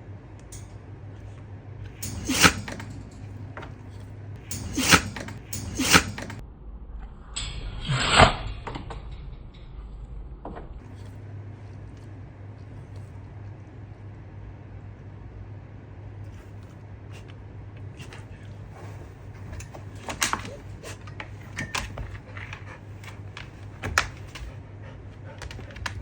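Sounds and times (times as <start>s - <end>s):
dog sneezing: 2.0s - 3.1s, 4.5s - 6.4s.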